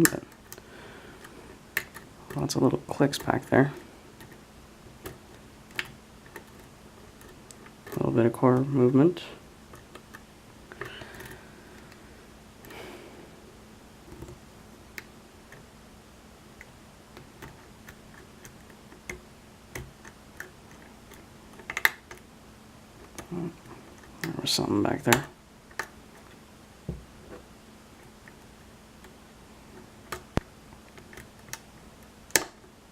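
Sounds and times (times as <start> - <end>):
lock pick clicking pins: 16.6 - 22.2.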